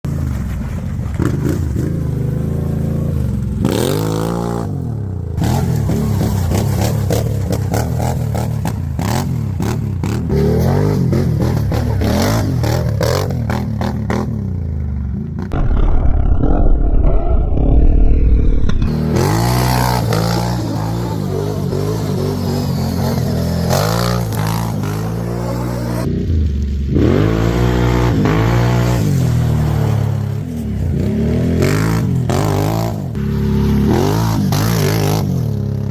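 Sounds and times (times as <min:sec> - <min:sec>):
atv engine revving: 0:01.0 - 0:16.0, 0:18.8 - 0:35.9
loud low rumble: 0:15.5 - 0:20.0.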